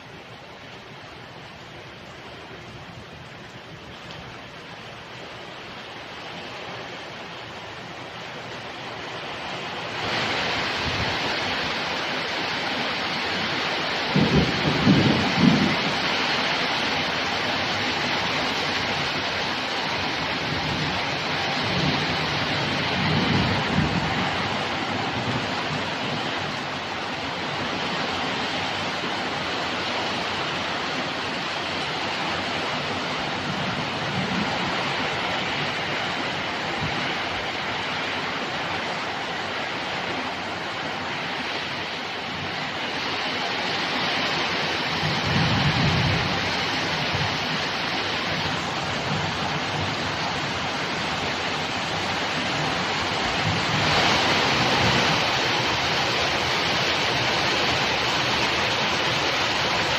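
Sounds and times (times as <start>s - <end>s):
heavy rain pouring: 0.0s - 59.9s
thunder rumbling: 13.2s - 27.8s, 43.8s - 59.9s.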